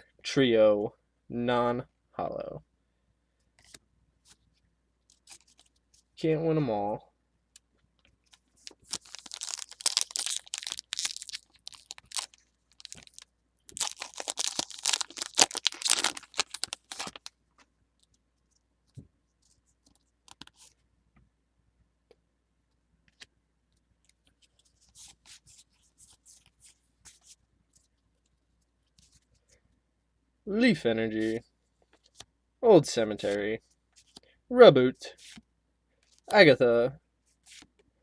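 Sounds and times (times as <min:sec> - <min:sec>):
foil wrapper crinkling and ripping: 0:08.6 - 0:17.3.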